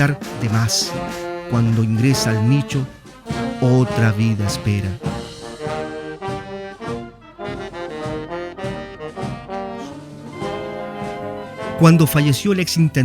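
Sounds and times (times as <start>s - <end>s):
brass instruments playing: 0.0s - 13.0s.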